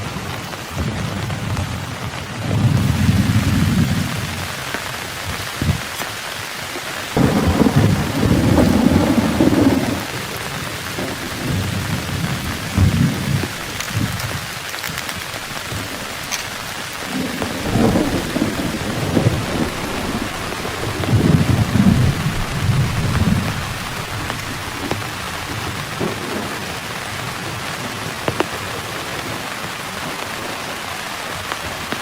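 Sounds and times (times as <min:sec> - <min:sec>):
heavy rain falling: 0:00.0 - 0:32.0
rolling thunder: 0:00.8 - 0:04.6, 0:07.1 - 0:14.6, 0:15.4 - 0:28.0.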